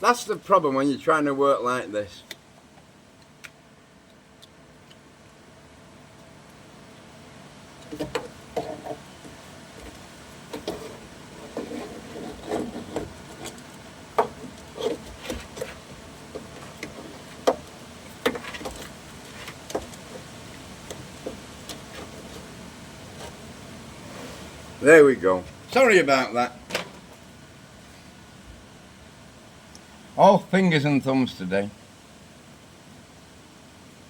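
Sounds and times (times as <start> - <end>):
tools knocking and scraping: 7.8 - 22.4.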